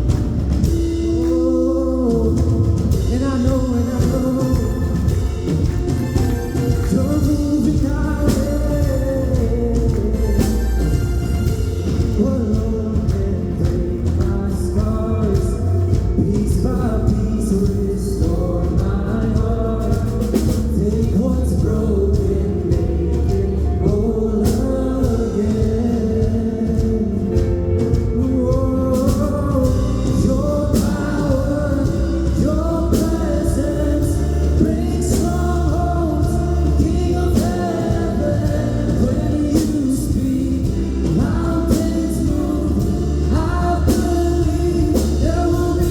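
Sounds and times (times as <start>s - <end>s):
band playing: 0.0s - 45.9s
voices singing a praise song: 0.0s - 45.9s.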